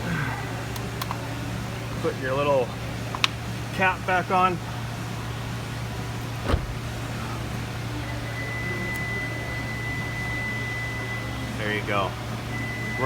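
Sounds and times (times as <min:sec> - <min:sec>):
thump: 0:06.4 - 0:07.1
low hum: 0:06.4 - 0:07.8
car high-pitched warning beep: 0:08.1 - 0:11.4, 0:12.5 - 0:13.0.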